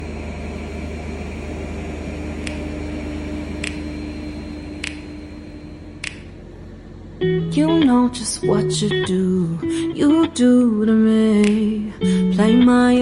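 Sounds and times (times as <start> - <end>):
electric machine humming: 0.0 - 13.0
sharp tick: 3.6 - 3.8, 4.8 - 5.0, 6.0 - 6.3, 11.4 - 11.7.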